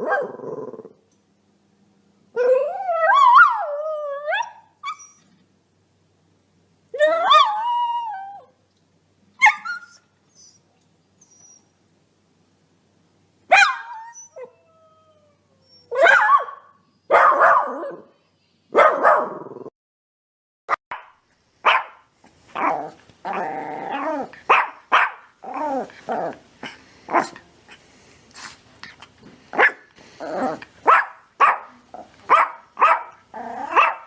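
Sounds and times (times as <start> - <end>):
dogs barking and whining: 0.0 - 1.0, 2.4 - 5.4, 7.0 - 8.5, 9.4 - 11.8, 13.5 - 19.7, 20.9 - 27.8, 28.9 - 34.0.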